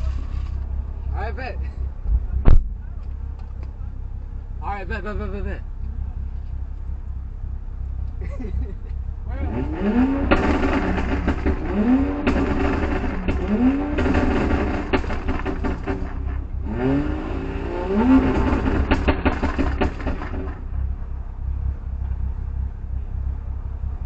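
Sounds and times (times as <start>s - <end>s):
low engine rumble: 0.0s - 24.0s
car engine revving: 9.2s - 23.1s.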